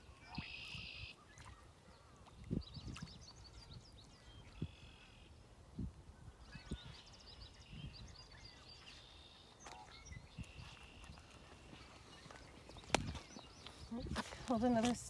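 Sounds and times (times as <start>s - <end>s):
songbirds chirping and trilling: 0.0s - 15.0s.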